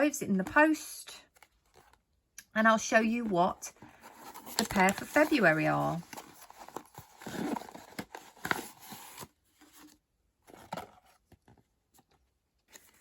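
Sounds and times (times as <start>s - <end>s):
packaging rustling and crinkling: 3.8s - 11.7s.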